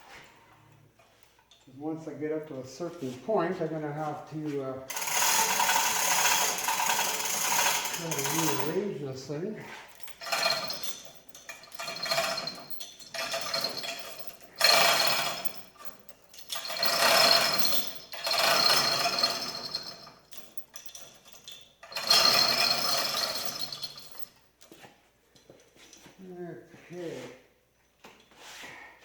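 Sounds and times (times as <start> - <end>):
chain hoist rattling and whirring: 4.9 - 8.9, 9.7 - 24.5.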